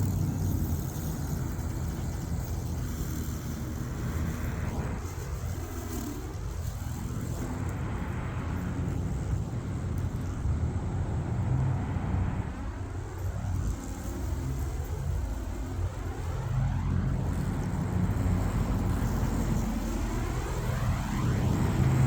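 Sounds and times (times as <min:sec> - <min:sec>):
remote-control mower cutting grass: 0:00.0 - 0:11.0, 0:12.1 - 0:22.0
road traffic rumbling past: 0:00.0 - 0:22.0.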